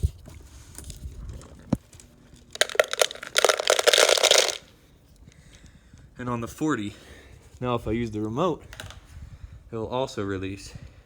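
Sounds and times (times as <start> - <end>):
dry kibble rattling from feeder: 0.8 - 4.6.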